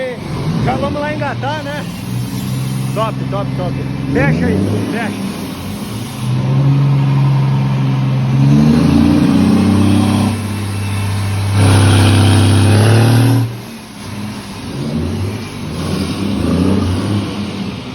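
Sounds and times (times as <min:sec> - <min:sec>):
diesel truck engine revving: 0:00.0 - 0:17.9.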